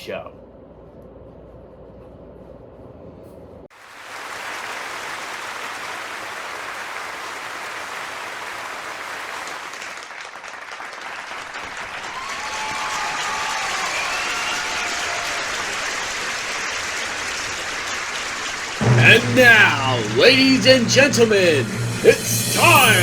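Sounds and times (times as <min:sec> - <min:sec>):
crowd applause: 0:03.7 - 0:23.0
high drawn-out tones: 0:18.8 - 0:23.0.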